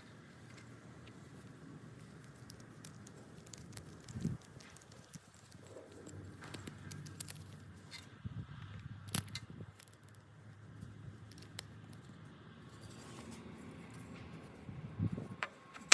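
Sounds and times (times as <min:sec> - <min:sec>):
soft rustling: 0:00.0 - 0:08.2
wooden parts clicking: 0:02.0 - 0:08.1.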